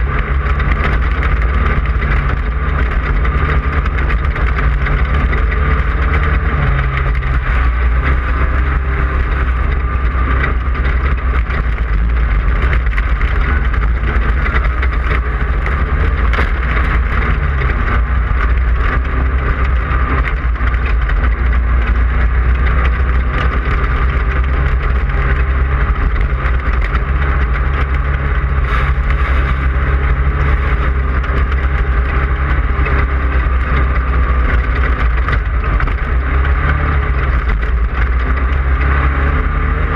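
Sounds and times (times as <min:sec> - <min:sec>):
race car engine running: 0:00.0 - 0:39.9.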